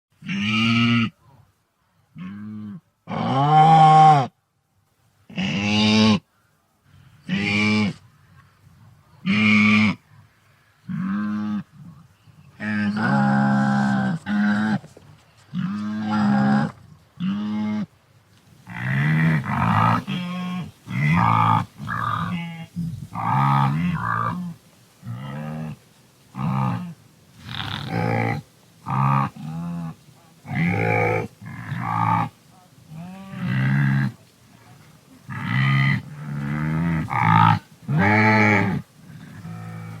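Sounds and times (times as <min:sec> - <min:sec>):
wildebeest calling: 0:18.6 - 0:40.0.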